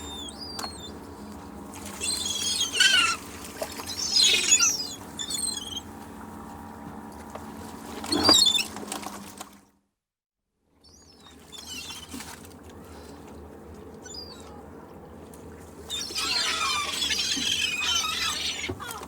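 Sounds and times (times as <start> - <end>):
gulls squawking: 1.9 - 5.9, 15.9 - 19.0.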